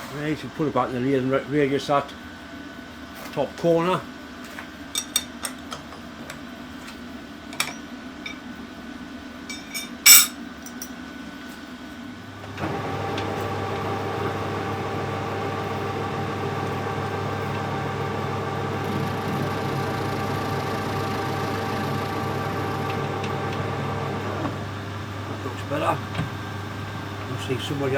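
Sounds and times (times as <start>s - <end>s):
machine motor humming and whining: 12.4s - 27.9s.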